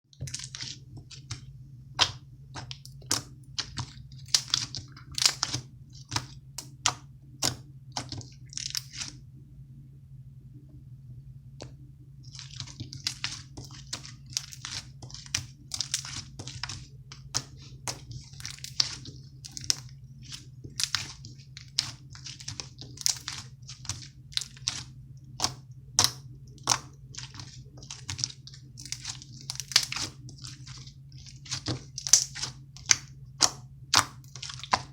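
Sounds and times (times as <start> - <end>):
low hum: 0.2 - 34.9
slime clicking and popping: 32.0 - 34.9.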